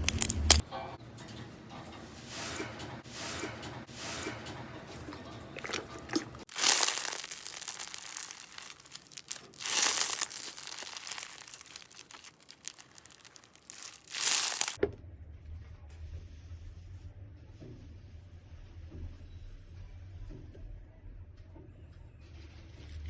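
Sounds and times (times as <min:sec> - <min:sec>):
crunchy slime crackling: 0:00.0 - 0:00.6, 0:05.6 - 0:14.8
slime crunches: 0:00.0 - 0:00.6, 0:05.6 - 0:14.8.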